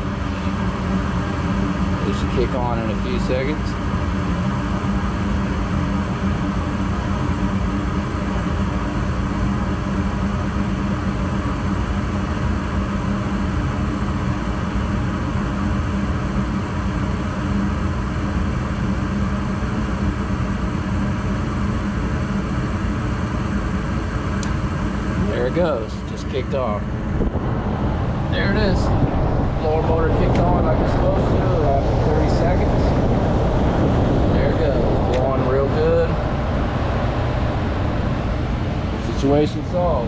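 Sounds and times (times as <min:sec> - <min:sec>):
furnace fan and burners humming: 0:00.0 - 0:40.0.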